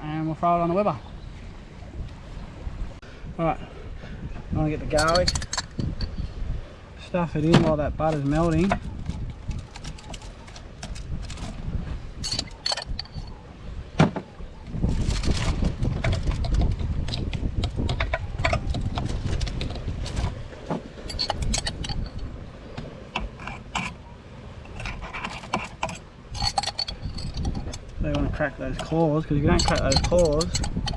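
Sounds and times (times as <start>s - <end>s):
wind rumbling on microphone: 0.0s - 30.9s
utensils clicking and clinking: 5.0s - 6.1s, 8.1s - 11.6s, 12.2s - 13.4s, 21.1s - 22.2s, 24.7s - 30.9s.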